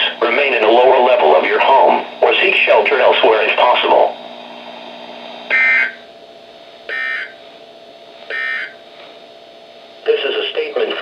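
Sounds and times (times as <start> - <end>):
faint radio hiss and hum: 0.0 - 11.0
buzzy warbling data tones: 5.5 - 6.1, 6.9 - 7.4, 8.3 - 8.8.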